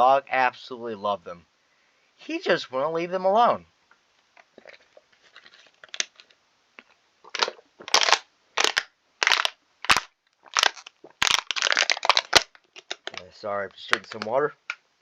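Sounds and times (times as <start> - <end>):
faint rustles and clicks: 3.8 - 8.0
plastic bottle crinkling: 4.4 - 14.8
person drinking water: 10.4 - 11.5.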